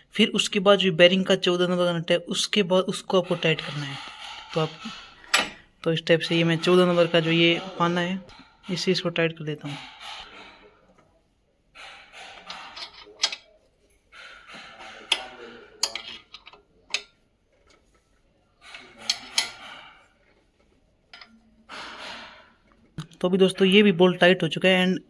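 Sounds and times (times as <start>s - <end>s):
metal scraping and grinding: 3.1s - 5.7s, 11.8s - 13.5s, 14.2s - 18.0s, 18.6s - 20.4s, 21.1s - 22.9s.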